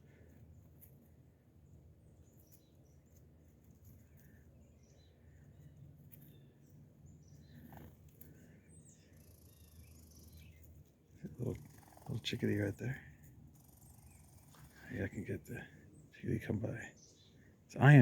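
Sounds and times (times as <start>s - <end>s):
songbirds chirping: 0.0s - 18.0s.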